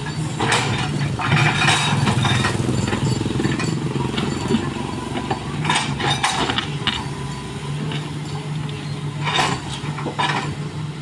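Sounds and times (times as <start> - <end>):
excavator diesel engine running: 0.0 - 11.0.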